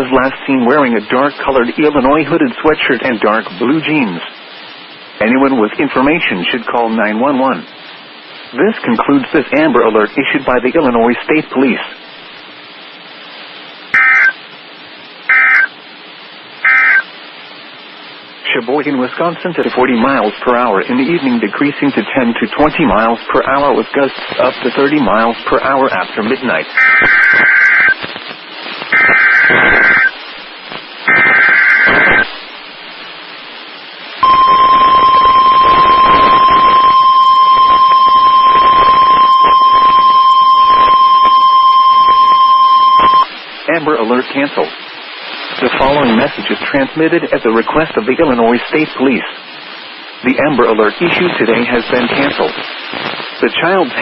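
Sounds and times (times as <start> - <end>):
radio hiss: 0.0 - 54.0
raspy digital data bursts: 13.9 - 14.4, 15.3 - 15.7, 16.6 - 17.0, 26.8 - 28.1, 28.8 - 30.2, 31.0 - 32.3, 34.2 - 43.3
steady warning alarm tone: 14.0 - 14.4, 15.3 - 15.7, 16.6 - 17.0, 28.9 - 30.1, 34.2 - 43.3
shrill digital warbling chirps: 16.7 - 17.0.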